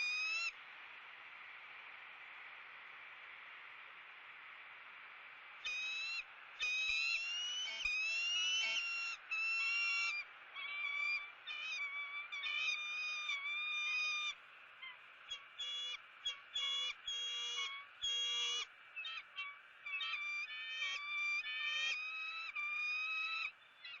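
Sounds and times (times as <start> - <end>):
bird calling: 5.6 - 24.0.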